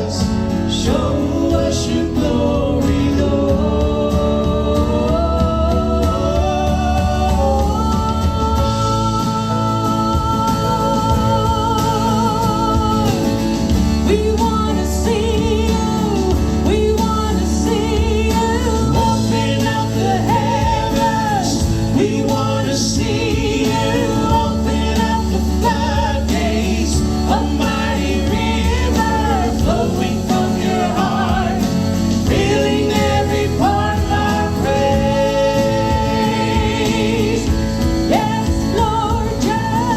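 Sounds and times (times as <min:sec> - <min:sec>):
person singing: 0:00.0 - 0:39.9
worship band music: 0:00.0 - 0:39.9.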